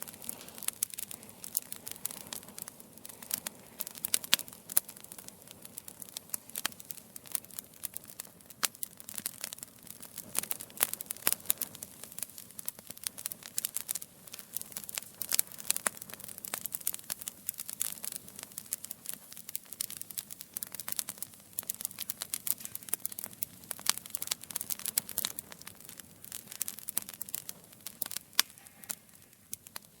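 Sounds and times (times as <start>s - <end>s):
fire crackling and popping: 0.0s - 30.0s.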